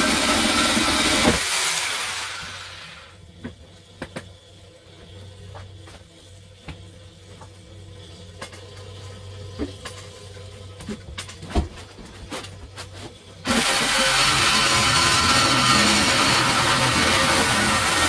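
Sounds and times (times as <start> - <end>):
power tool cutting: 0.0 - 3.1, 13.5 - 18.0.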